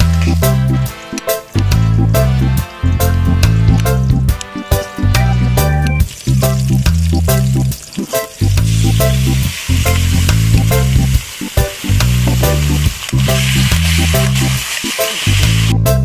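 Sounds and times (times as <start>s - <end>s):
background music with heavy bass: 0.0s - 16.0s
food sizzling in a pan: 6.0s - 15.9s.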